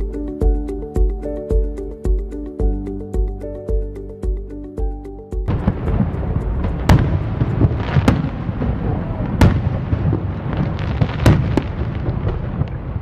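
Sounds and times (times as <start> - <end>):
crackling low rumble: 5.5 - 13.0.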